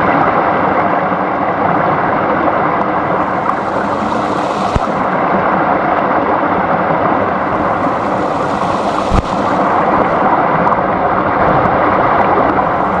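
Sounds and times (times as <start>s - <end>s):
stream babbling over stones: 0.1s - 13.0s
low thump: 7.7s - 9.7s.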